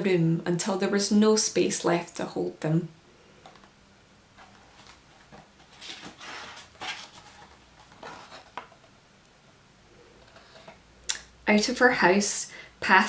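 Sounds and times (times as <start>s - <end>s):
book pages rustling: 4.3s - 9.0s.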